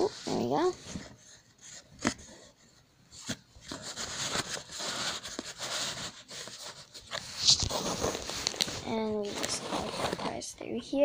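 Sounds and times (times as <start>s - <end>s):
hands rubbing and crinkling: 3.3s - 10.4s.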